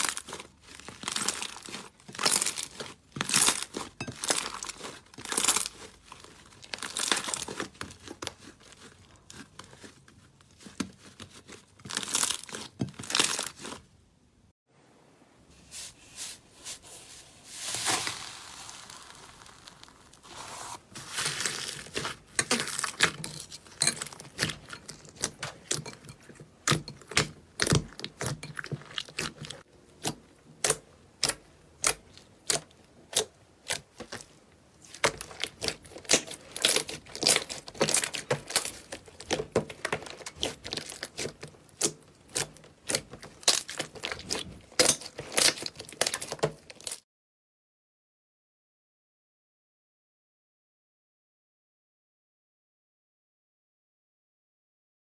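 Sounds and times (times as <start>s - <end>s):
slime popping and crackling: 17.6s - 23.6s.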